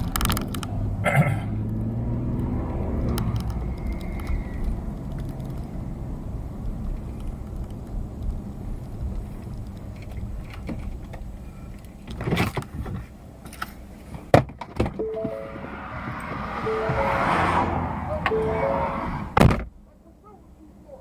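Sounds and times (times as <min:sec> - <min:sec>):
vehicle engine rumbling: 0:00.0 - 0:21.0
short beeping tones: 0:15.0 - 0:19.4.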